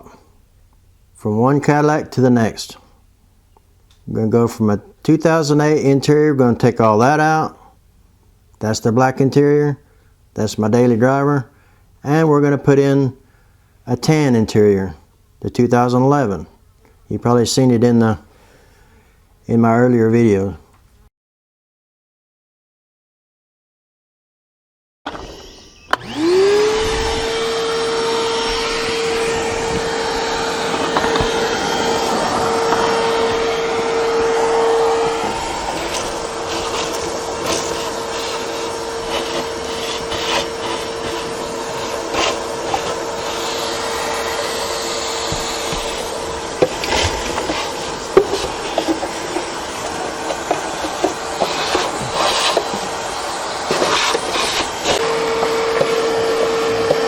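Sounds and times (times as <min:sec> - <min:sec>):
vacuum cleaner motor whine: 0:25.1 - 0:57.0
knocks and scrapes: 0:45.3 - 0:52.8, 0:53.7 - 0:57.0.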